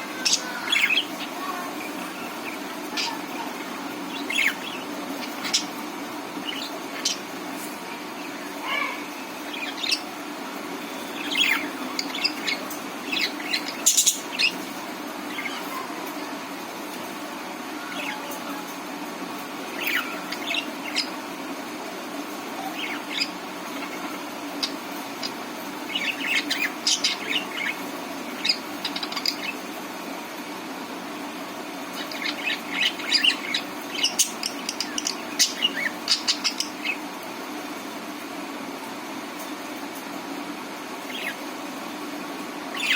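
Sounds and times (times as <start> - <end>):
budgerigars chirping and warbling: 0.0 - 7.6, 8.2 - 10.2, 11.0 - 15.9, 17.8 - 18.7, 19.6 - 21.3, 22.5 - 29.8, 31.7 - 37.2, 41.0 - 41.6, 42.7 - 42.9
steady low hum: 0.0 - 42.9
budgerigar chirping: 4.1 - 5.8, 11.2 - 14.6, 24.6 - 29.6.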